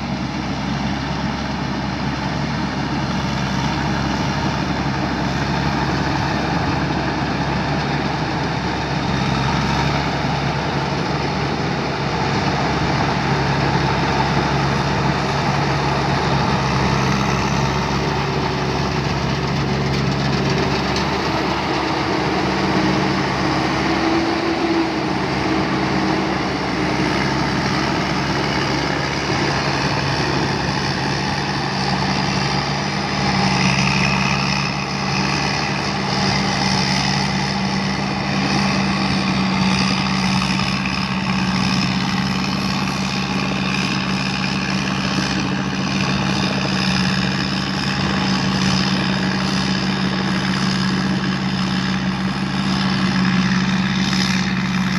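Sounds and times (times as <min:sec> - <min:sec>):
diesel engine drone: 0:00.0 - 0:54.9
machinery noise: 0:00.0 - 0:54.9.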